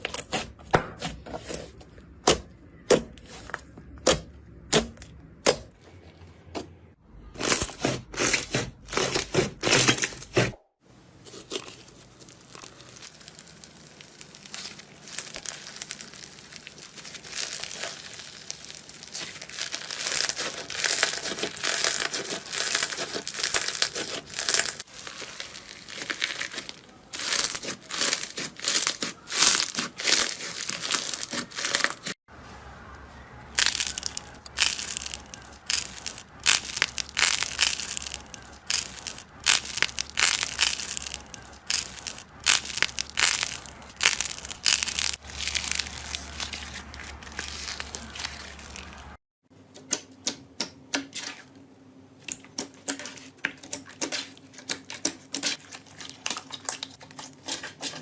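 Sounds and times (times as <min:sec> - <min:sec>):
slime crackling when squeezed: 0:11.4 - 0:32.1, 0:33.6 - 0:49.2.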